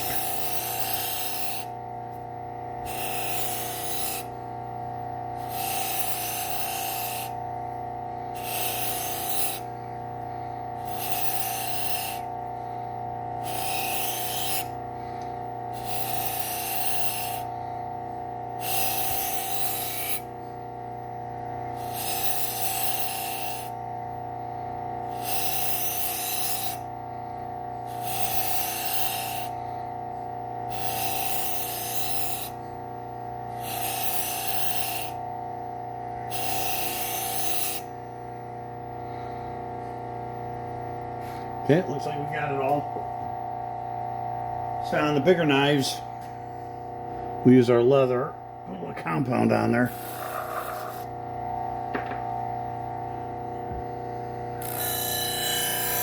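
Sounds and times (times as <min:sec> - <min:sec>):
knife scrubbing on abrasive wheel: 0:00.0 - 0:01.7, 0:02.8 - 0:04.4, 0:05.3 - 0:07.4, 0:08.3 - 0:09.8, 0:10.8 - 0:12.4, 0:13.4 - 0:17.7, 0:18.6 - 0:20.3, 0:21.7 - 0:23.8, 0:25.1 - 0:26.9, 0:27.8 - 0:29.7, 0:30.7 - 0:32.6, 0:33.5 - 0:35.2, 0:36.3 - 0:37.9, 0:49.0 - 0:51.2, 0:54.6 - 0:56.0
belt sander humming: 0:00.0 - 0:21.2, 0:21.8 - 0:23.8, 0:25.0 - 0:56.0.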